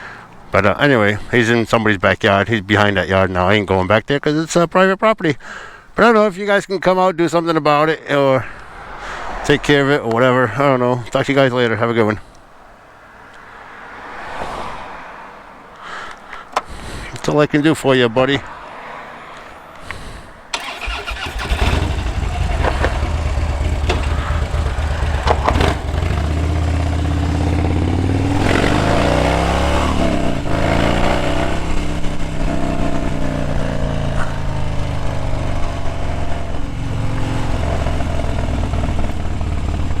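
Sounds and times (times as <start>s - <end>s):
motorcycle engine revving: 20.5s - 40.0s.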